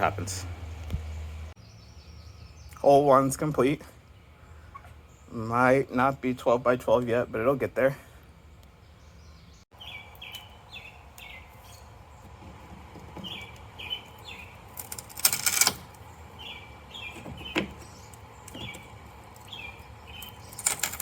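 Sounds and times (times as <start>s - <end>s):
small bird chirping: 0.8s - 3.0s, 4.2s - 5.4s, 8.5s - 12.4s, 13.2s - 15.0s, 15.8s - 21.0s.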